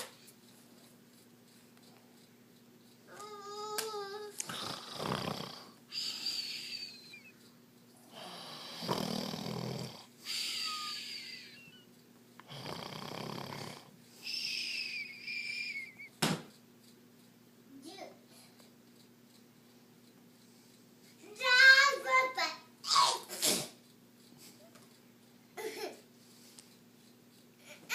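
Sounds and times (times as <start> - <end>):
man pretend snoring: 4.5 - 6.8, 8.1 - 11.1, 12.5 - 13.9.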